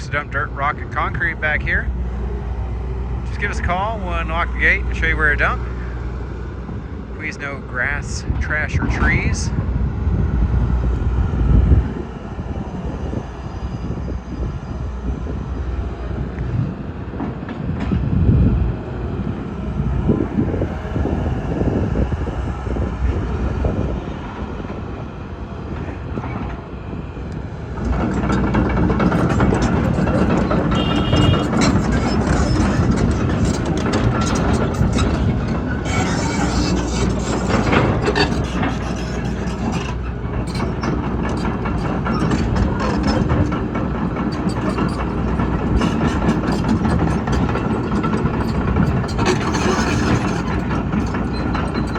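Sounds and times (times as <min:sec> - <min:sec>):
excavator engine and hydraulics: 0:00.0 - 0:51.9
bucket clanking and scraping: 0:28.0 - 0:43.0
high squeal: 0:29.9 - 0:32.9.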